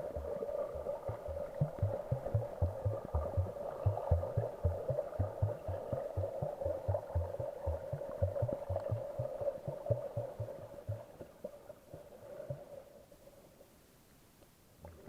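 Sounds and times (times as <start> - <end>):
low pulsing bass line: 0.0 - 11.1.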